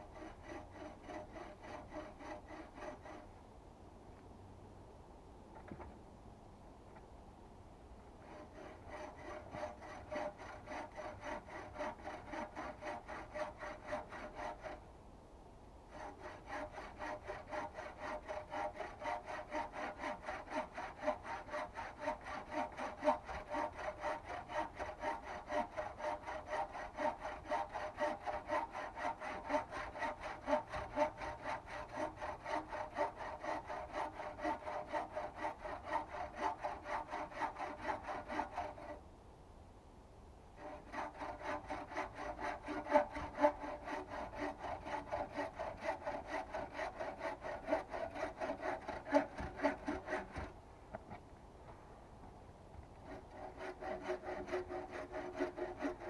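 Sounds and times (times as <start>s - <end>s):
hand saw sawing wood: 0.0s - 3.4s, 8.2s - 14.9s, 15.9s - 39.0s, 40.6s - 50.6s, 52.9s - 56.0s.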